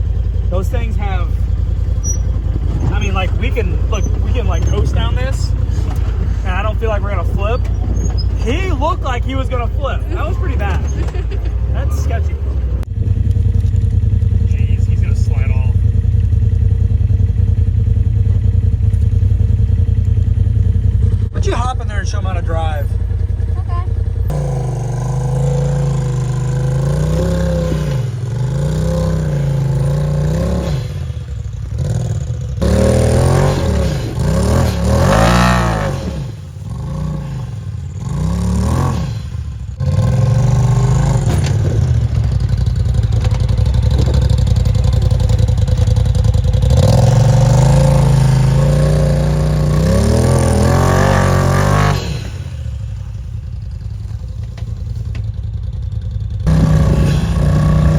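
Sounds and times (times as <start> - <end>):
rattling clatter: 0.0 - 14.5, 39.3 - 57.9
utility vehicle engine revving: 0.0 - 57.9.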